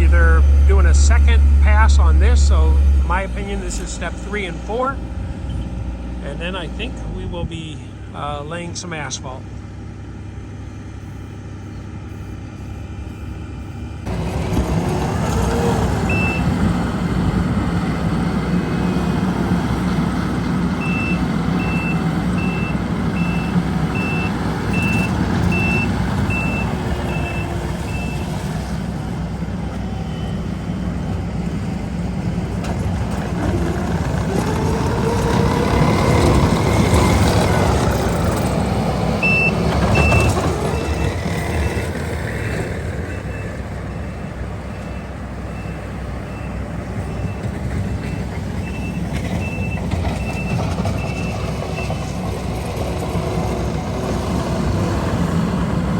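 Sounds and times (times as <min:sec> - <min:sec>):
heavy machine engine running: 0:00.0 - 0:55.9
reversing alarm beeping: 0:11.0 - 0:13.9, 0:15.6 - 0:16.8, 0:20.8 - 0:28.5, 0:29.9 - 0:31.0, 0:39.2 - 0:41.9, 0:44.6 - 0:52.2.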